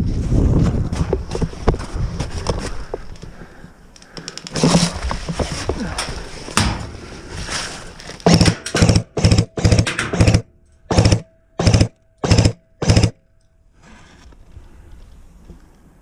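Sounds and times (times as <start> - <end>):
rustling noise: 0.0 - 3.6, 4.2 - 9.0
airsoft gun firing bursts: 8.2 - 13.2.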